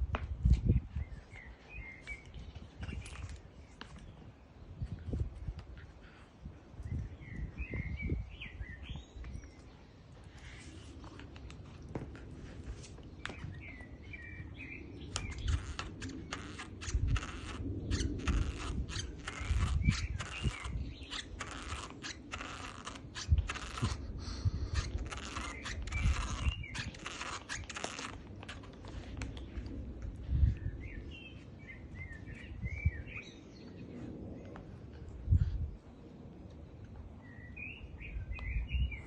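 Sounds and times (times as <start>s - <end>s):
birds chirping: 5.9s - 12.1s, 13.0s - 34.8s
teeth gnawing on a shoe: 15.2s - 29.4s.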